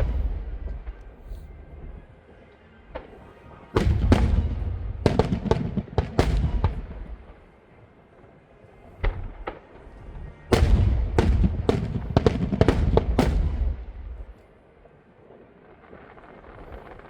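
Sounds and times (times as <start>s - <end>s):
fireworks bangs: 0.0s - 2.0s, 2.9s - 7.5s, 9.0s - 14.4s, 15.0s - 17.0s
low rumble: 0.0s - 2.1s.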